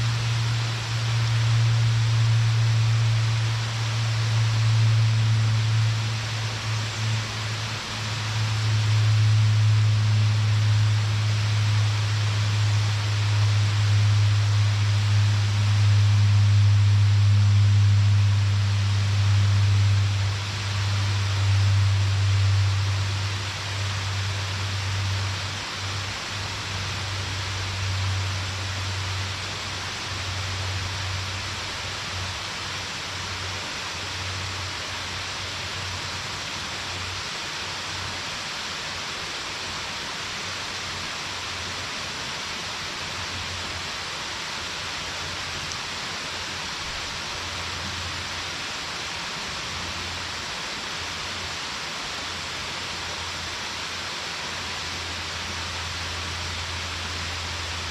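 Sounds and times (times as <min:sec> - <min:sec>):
low rumble: 0:00.0 - 0:31.6.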